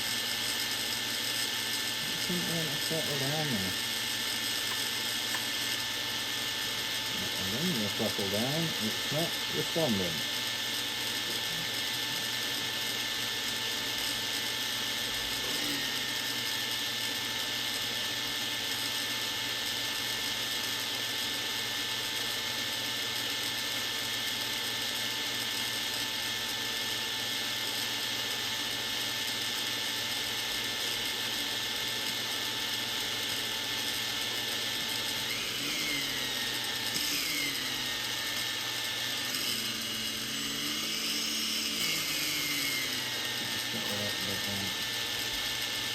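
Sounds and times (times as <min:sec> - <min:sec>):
drone motors whining: 0:00.0 - 0:13.0, 0:15.1 - 0:16.6, 0:32.8 - 0:45.9.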